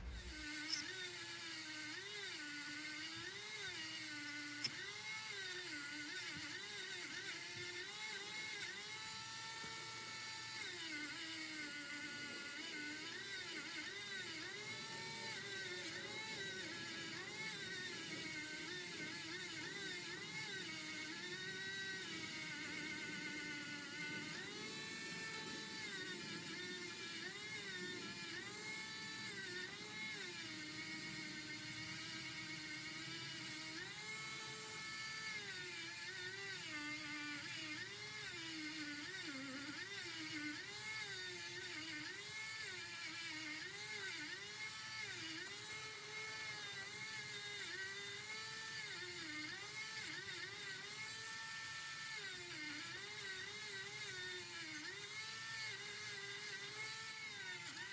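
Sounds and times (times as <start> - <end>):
electric rotary tool whirring: 0.0 - 57.9.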